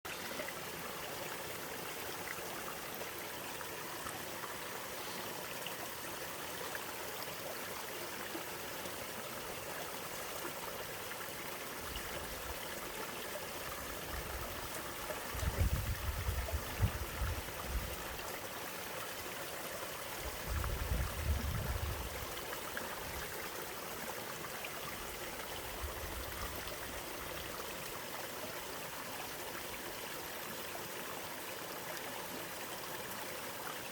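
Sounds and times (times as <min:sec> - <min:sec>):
stream rushing water: 0:00.1 - 0:33.9.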